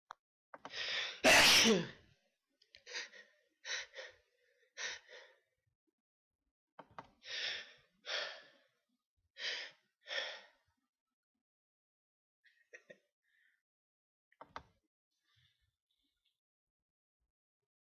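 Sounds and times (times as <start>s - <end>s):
loud sneeze: 1.2s - 1.9s.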